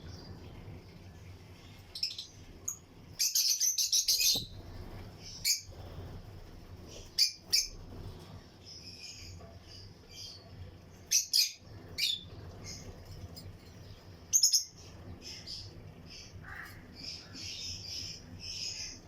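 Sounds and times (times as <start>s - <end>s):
lovebirds chirping: 0.0s - 6.1s, 6.8s - 19.0s
sharp shrieking bird calls: 15.3s - 19.0s.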